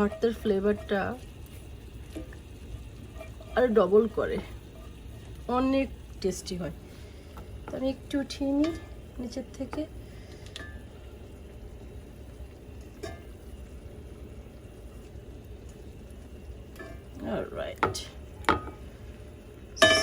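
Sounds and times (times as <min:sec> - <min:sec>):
utensil scraping a pan: 0:00.0 - 0:01.2, 0:02.1 - 0:05.3
fish sizzling in a frying pan: 0:00.0 - 0:20.0.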